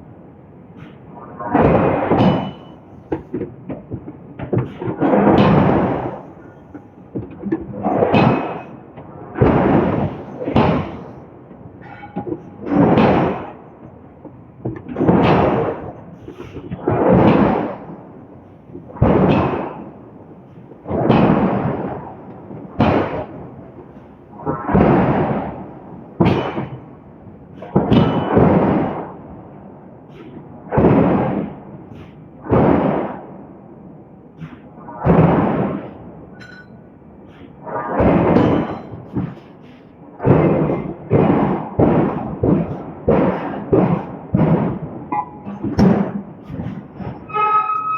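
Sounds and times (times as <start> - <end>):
forging hammer striking steel: 1.6 - 3.4, 4.6 - 13.6, 14.9 - 18.0, 19.0 - 29.0, 34.4 - 47.9.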